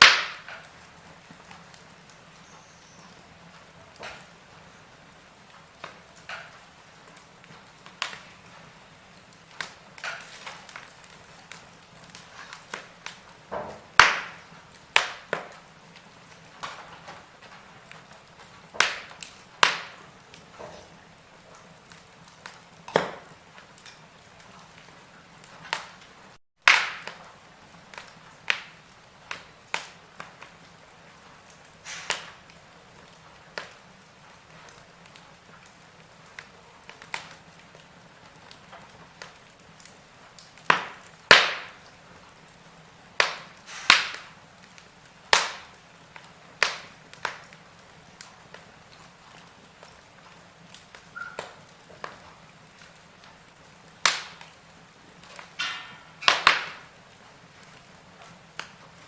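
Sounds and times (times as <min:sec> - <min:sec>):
wood fire crackling: 0:00.0 - 0:59.0
faint hiss: 0:31.8 - 0:32.5, 0:42.9 - 0:44.6.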